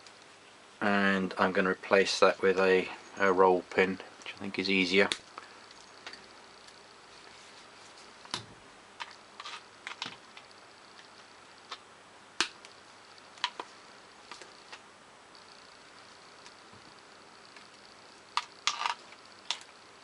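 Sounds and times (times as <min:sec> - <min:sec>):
small metal parts clicking: 0:18.4 - 0:19.7.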